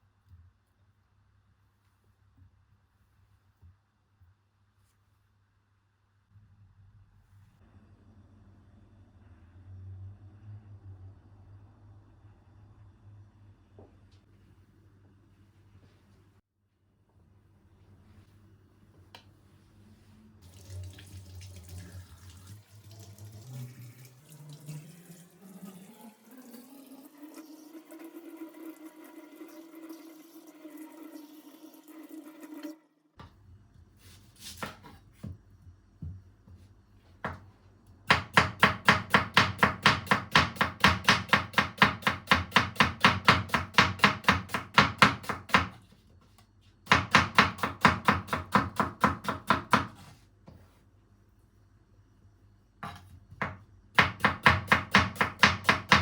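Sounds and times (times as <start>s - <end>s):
tap water filling a vessel: 20.4s - 25.5s
knife chopping on cutting board: 38.1s - 45.9s, 46.9s - 50.6s, 52.8s - 56.0s.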